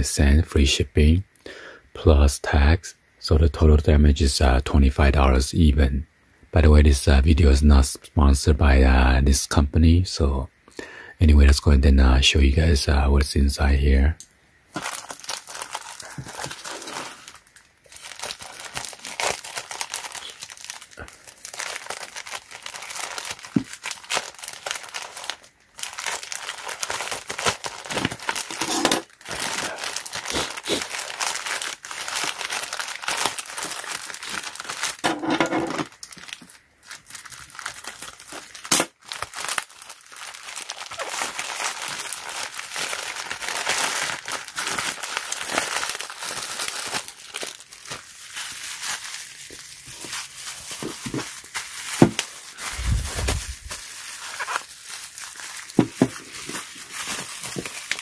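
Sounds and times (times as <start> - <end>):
packaging tearing: 14.7 - 35.1, 35.8 - 58.0
packaging crinkling and rustling: 14.7 - 58.0.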